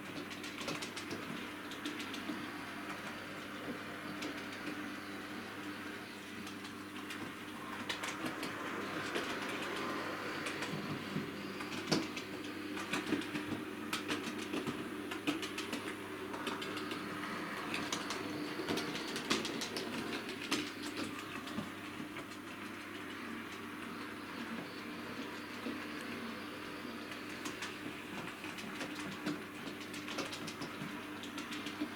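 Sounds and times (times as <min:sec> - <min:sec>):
wheels clicking over track joints: 0:06.5 - 0:23.6.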